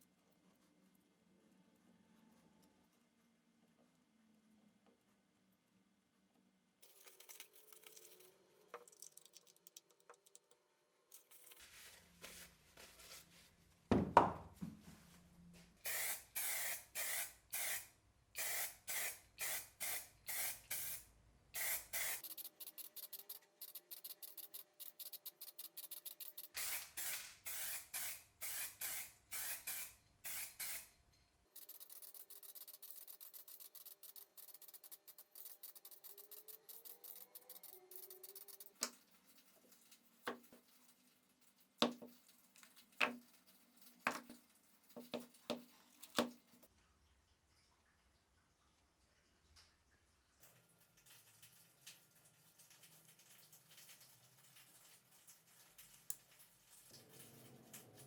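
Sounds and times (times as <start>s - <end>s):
aerosol can spraying: 15.8s - 21.0s, 21.6s - 30.9s, 31.6s - 39.0s.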